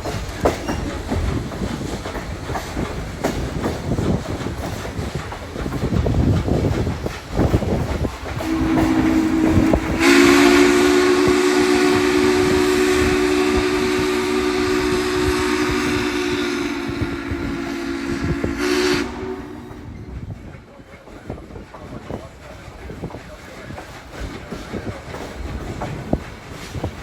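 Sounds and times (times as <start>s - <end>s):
train wheels clicking over rail joints: 0.0s - 27.0s
steam whistle: 8.4s - 20.0s.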